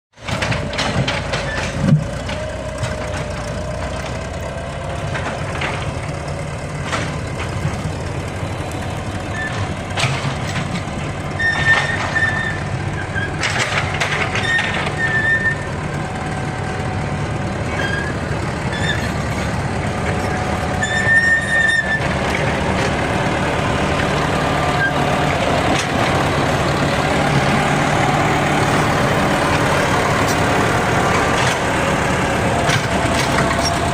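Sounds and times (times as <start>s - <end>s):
bulldozer diesel engine under load: 0.1s - 33.9s
metallic clanks: 9.4s - 15.7s
short high squeals: 11.4s - 13.4s, 14.4s - 15.7s, 20.8s - 22.1s.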